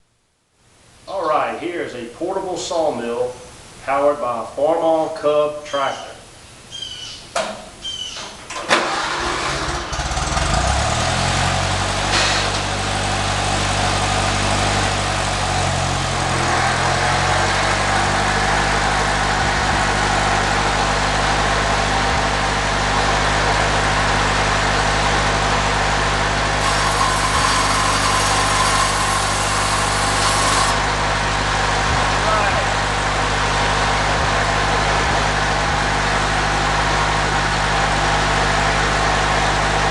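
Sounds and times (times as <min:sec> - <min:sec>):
tractor engine starting and running: 0:07.3 - 0:39.9
high-pitched whine: 0:13.5 - 0:37.2.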